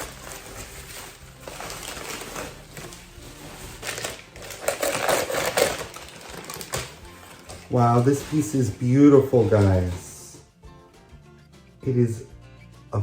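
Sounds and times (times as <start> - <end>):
packing paper crumpling: 0.0 - 10.2.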